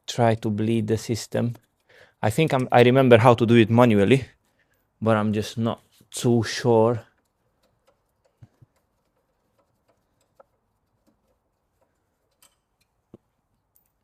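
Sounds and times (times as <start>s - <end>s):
faint clicks and knocks: 7.0s - 14.0s.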